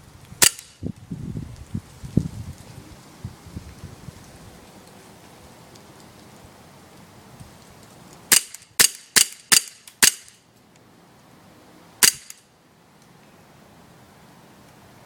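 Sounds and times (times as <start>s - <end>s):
airsoft pistol shots: 0.4s - 0.8s, 8.3s - 10.4s, 12.0s - 12.4s.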